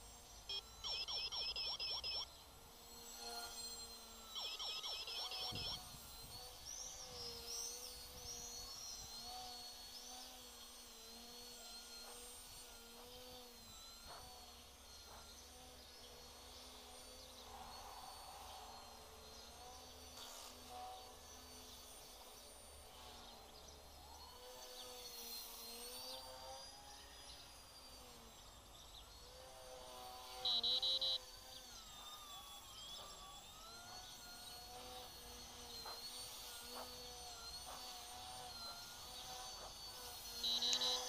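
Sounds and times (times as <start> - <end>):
quadcopter motors whining: 0.0 - 41.0
high electronic beeps: 0.5 - 2.3, 4.3 - 6.0, 30.4 - 31.2, 40.4 - 41.0.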